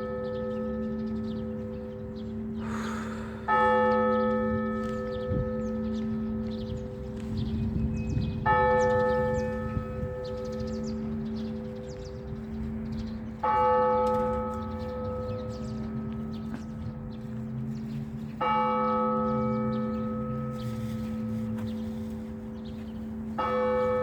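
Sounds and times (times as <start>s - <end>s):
church bell ringing: 0.0s - 24.0s.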